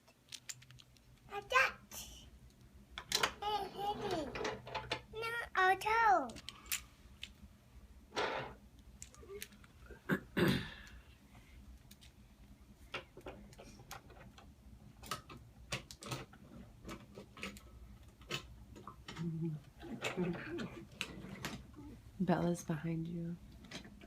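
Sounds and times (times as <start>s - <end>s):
plastic toy pieces clicking: 0.3s - 1.2s.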